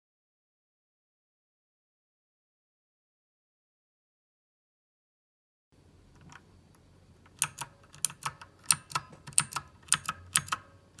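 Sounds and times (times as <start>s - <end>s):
mechanical keyboard clicks: 7.3s - 11.0s.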